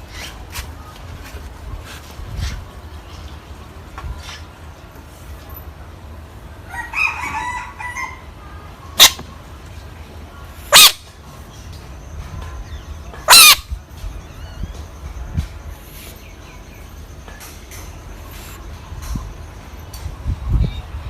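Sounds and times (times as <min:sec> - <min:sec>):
frog rasping call: 0:13.3 - 0:13.6.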